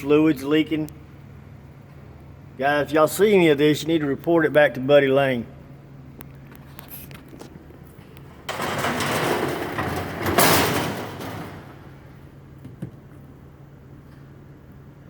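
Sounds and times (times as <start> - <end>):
baler door scraping and rattling: 8.3 - 12.2.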